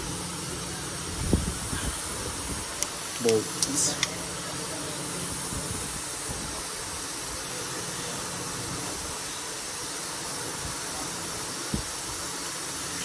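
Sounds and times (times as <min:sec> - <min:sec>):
steady hiss: 0:00.0 - 0:13.0.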